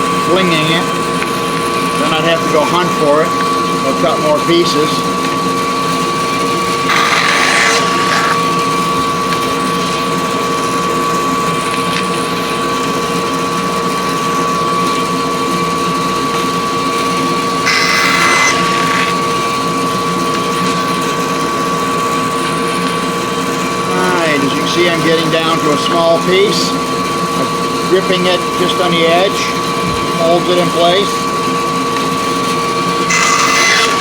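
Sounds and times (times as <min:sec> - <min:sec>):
bandsaw and shop vacuum running: 0:00.0 - 0:34.0
saw blade cutting a board: 0:06.4 - 0:08.7, 0:17.6 - 0:19.4, 0:33.0 - 0:34.0.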